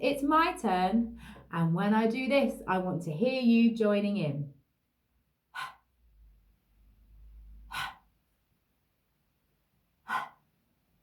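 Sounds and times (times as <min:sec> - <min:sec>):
woman breathing puffs of air: 0:07.7 - 0:08.1, 0:10.1 - 0:10.4.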